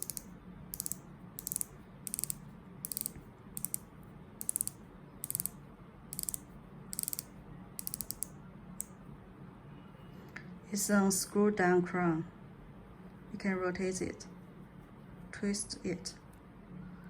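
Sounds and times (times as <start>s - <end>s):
watch bezel clicking: 0.0s - 8.9s.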